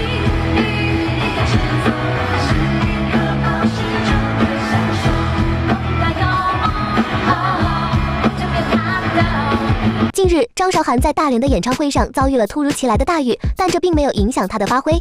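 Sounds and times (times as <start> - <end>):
rock band playing: 0.0 - 10.1
bass line: 0.0 - 10.2
woman singing: 0.0 - 15.0.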